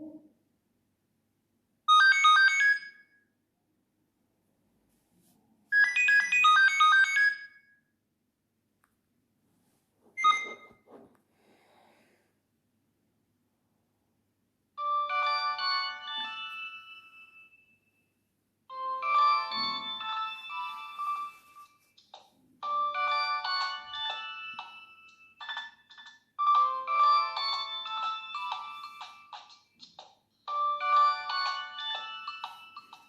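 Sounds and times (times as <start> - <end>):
polyphonic phone ringtone: 1.9 - 3.1, 5.8 - 7.6, 10.2 - 10.8, 14.8 - 17.9, 18.7 - 21.9, 22.6 - 29.6, 30.5 - 33.0.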